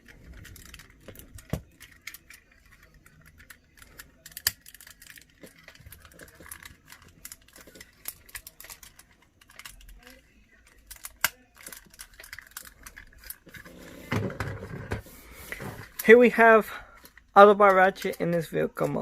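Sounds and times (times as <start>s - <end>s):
plastic clicks and rattles: 0.0s - 13.7s.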